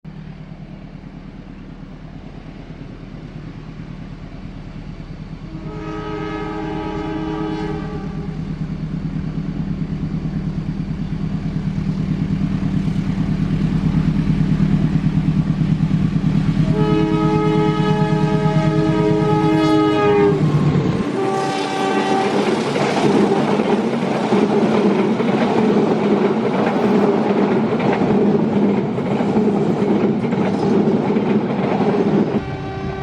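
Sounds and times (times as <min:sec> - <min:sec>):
train engine drone: 0:00.1 - 0:33.0
train horn chord: 0:05.4 - 0:08.5, 0:16.5 - 0:23.6, 0:32.4 - 0:33.0.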